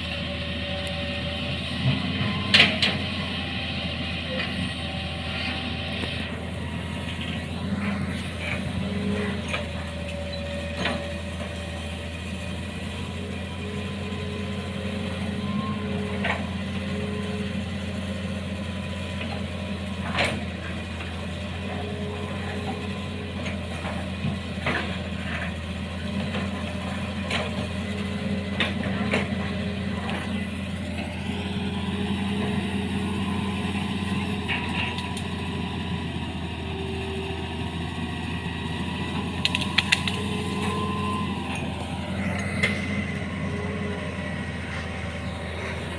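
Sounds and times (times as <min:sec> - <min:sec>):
excavator diesel engine running: 0:00.0 - 0:45.9.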